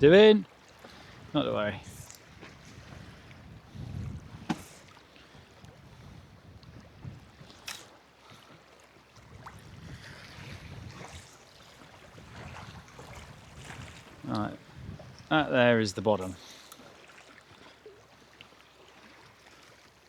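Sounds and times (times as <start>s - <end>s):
water slapping boat hull: 0.0s - 20.0s
wind buffeting microphone: 1.0s - 7.6s, 9.2s - 11.3s, 12.0s - 16.2s.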